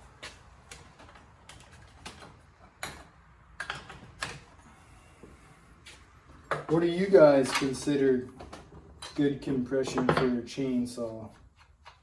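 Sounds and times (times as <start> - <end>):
tools and parts clicking and knocking: 0.2 - 4.6, 6.4 - 6.8, 7.4 - 10.6, 11.4 - 12.0.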